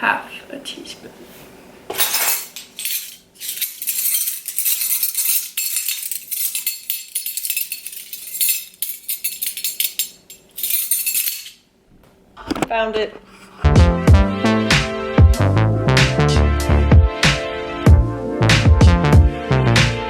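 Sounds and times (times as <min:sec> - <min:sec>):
metal utensils clinking: 0:01.9 - 0:11.6.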